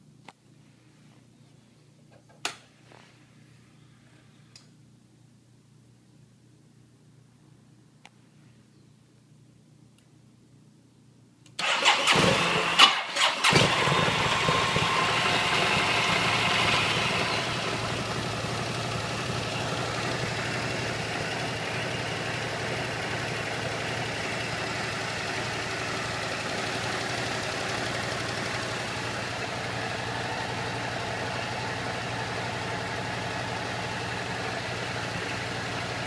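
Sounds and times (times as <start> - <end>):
motorcycle starter cranking: 11.6 - 14.8
motorcycle engine idling: 13.6 - 36.0.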